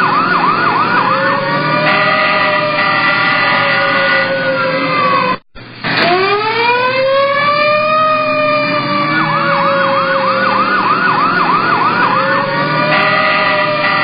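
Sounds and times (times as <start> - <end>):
emergency siren wailing: 0.0 - 14.0
steady high siren tone: 0.0 - 14.0
siren fast yelping warble: 6.1 - 14.0.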